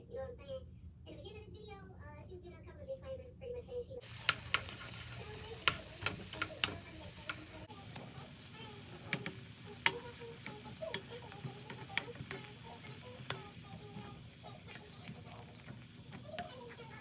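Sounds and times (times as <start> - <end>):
low steady sizzle: 4.0 - 17.0.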